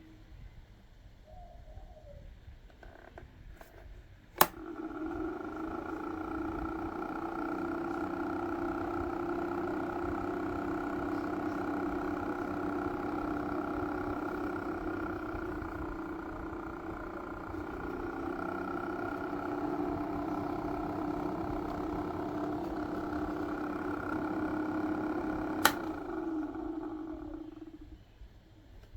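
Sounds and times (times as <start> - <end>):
small fan motor humming: 2.5 - 28.9
switch click: 4.4 - 4.8, 25.6 - 26.0.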